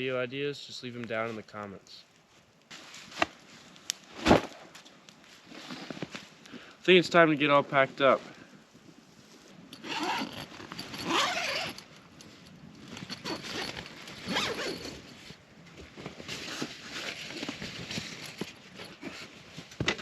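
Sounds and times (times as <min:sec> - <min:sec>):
zipper being pulled: 0:09.7 - 0:11.9, 0:12.9 - 0:15.1, 0:16.3 - 0:19.3
handling noise: 0:09.7 - 0:20.0.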